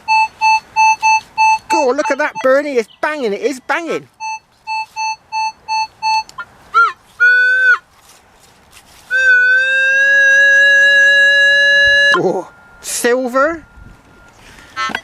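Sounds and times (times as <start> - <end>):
metal detector beeps and tones: 0.0 - 3.2, 4.2 - 7.8, 11.4 - 15.0.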